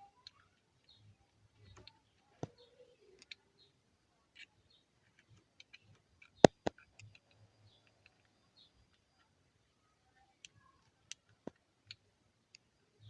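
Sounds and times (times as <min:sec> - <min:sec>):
small plastic clicks and taps: 0:00.2 - 0:03.6, 0:04.3 - 0:09.3, 0:10.4 - 0:12.7
sharp plastic snaps: 0:05.2 - 0:07.3.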